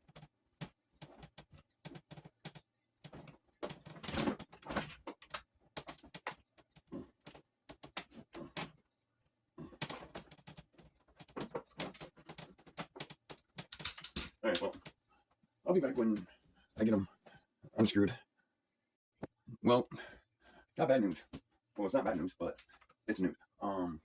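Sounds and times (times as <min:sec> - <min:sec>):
plastic and metal clicks and scrapes: 0:09.8 - 0:15.0.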